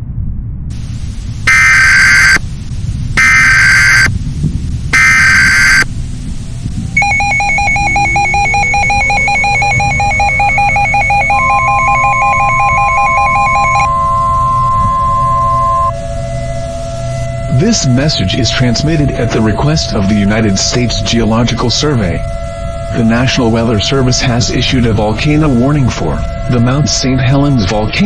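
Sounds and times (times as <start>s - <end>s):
low rumble: 0.0s - 28.0s
data header tones: 1.5s - 2.4s, 3.2s - 4.1s, 5.0s - 5.9s, 6.9s - 27.4s
pulsing electronic attention tone: 1.5s - 2.4s, 3.2s - 4.1s, 5.0s - 5.9s, 7.0s - 24.2s
rising siren glides: 1.5s - 2.4s, 3.2s - 4.1s, 5.0s - 5.9s, 7.0s - 27.5s.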